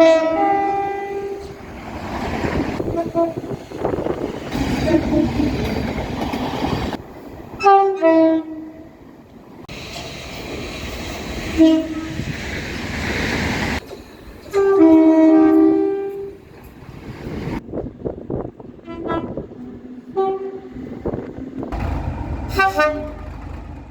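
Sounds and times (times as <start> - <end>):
two-note train horn blasts: 0.0 - 1.6, 11.6 - 12.2, 14.5 - 16.4, 18.8 - 19.4, 20.1 - 20.9, 22.4 - 23.6
rumble of passing trains: 0.0 - 23.9.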